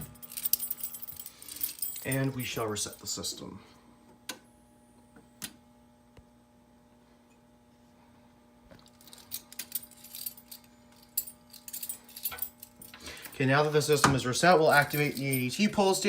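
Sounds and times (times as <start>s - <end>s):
keys jangling and clicking: 0.0s - 3.1s, 8.8s - 15.8s
faint steady hum: 0.0s - 16.0s.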